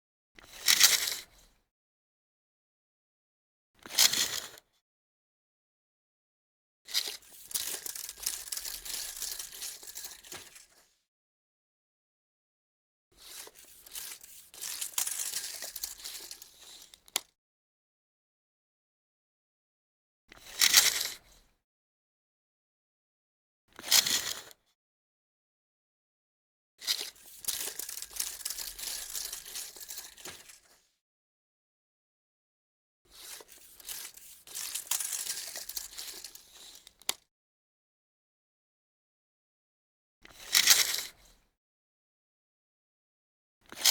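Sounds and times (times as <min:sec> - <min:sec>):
tape measure blade rasping: 0:07.2 - 0:10.4, 0:13.3 - 0:16.6, 0:26.9 - 0:30.6, 0:33.1 - 0:36.8
tape measure clicks: 0:13.3 - 0:16.7, 0:26.9 - 0:30.6, 0:33.2 - 0:36.8.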